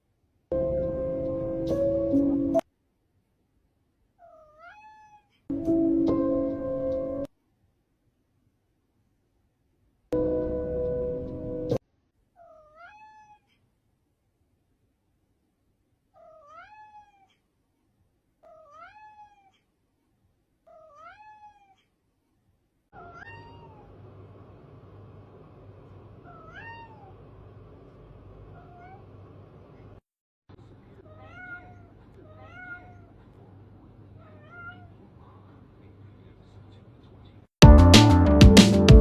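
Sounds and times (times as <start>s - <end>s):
cat meowing: 4.2s - 5.4s, 12.4s - 13.6s, 16.2s - 17.4s, 18.4s - 19.6s, 20.7s - 21.9s, 23.0s - 24.0s, 26.2s - 27.2s, 28.6s - 29.1s, 31.1s - 33.1s, 34.2s - 34.9s
loud music: 37.6s - 39.0s.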